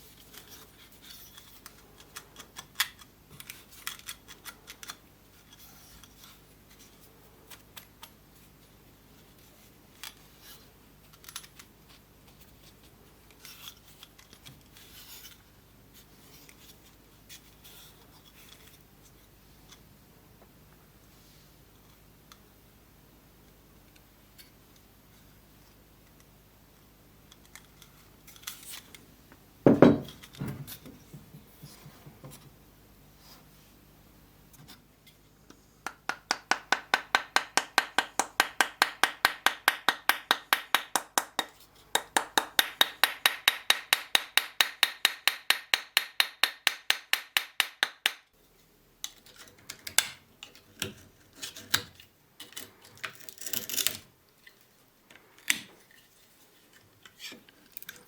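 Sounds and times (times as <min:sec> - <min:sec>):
heavy knock: 0:29.7 - 0:30.7
clicks and scrapes: 0:49.1 - 0:54.6.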